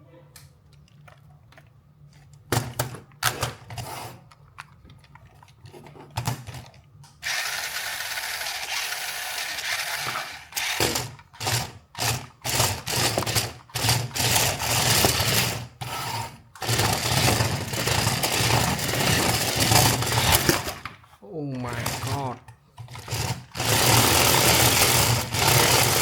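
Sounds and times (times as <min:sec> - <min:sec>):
toy car motor whirring: 0:07.2 - 0:20.8, 0:23.0 - 0:26.0.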